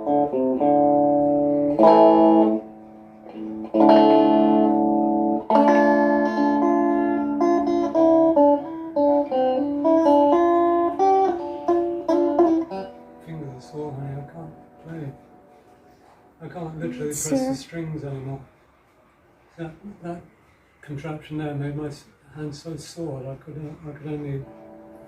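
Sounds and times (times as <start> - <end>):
acoustic guitar strumming and picking: 0.0 - 13.3, 16.8 - 17.6.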